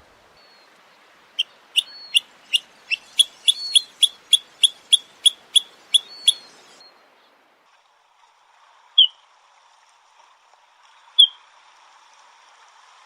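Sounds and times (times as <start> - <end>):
shorebird short sharp calls: 1.3 - 6.8
faint thin drawn-out whistles: 1.4 - 6.9.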